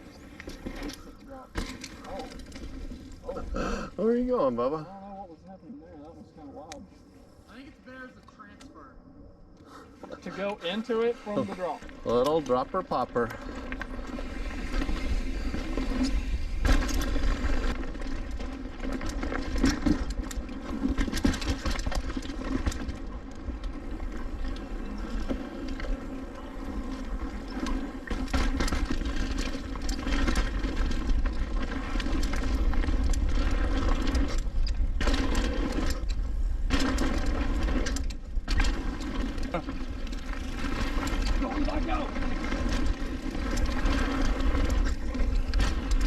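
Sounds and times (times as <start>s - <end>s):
bike rattling with knocks: 0.0s - 3.4s, 12.0s - 46.0s
bike tyres rolling on dirt: 0.0s - 46.0s
wind rumbling on microphone: 13.4s - 46.0s.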